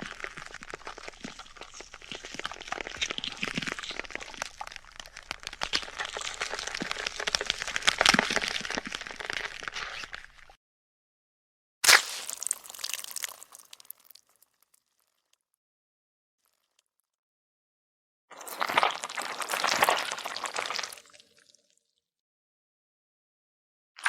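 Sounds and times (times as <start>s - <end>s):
wet crunching and crackling: 0.0s - 10.6s, 11.8s - 14.6s, 18.3s - 21.5s.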